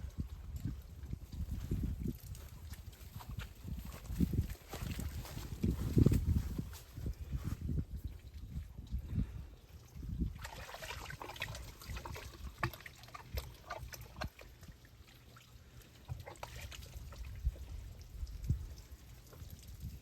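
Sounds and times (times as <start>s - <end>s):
water pouring and splashing: 0.0s - 20.0s
water dripping: 8.0s - 20.0s.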